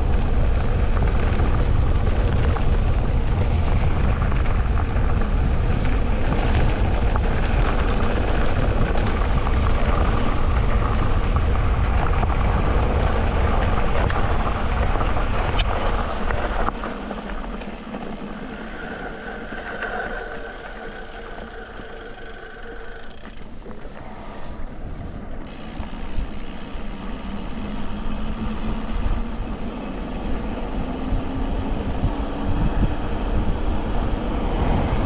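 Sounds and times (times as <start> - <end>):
bike rattling: 0.0 - 35.0
bike tyres rolling on dirt: 0.0 - 35.0
heavy low rumble: 0.0 - 35.0
faint steady whine: 12.2 - 35.0.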